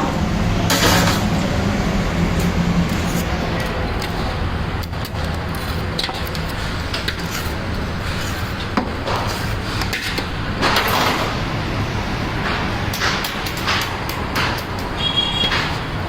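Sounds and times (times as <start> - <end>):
low traffic hum: 0.0 - 16.0
knocks and clatter: 8.6 - 11.4, 12.4 - 15.9.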